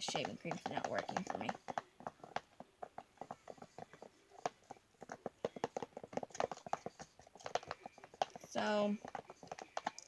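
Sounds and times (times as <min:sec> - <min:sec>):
slime being stirred in a bowl: 0:00.0 - 0:10.0.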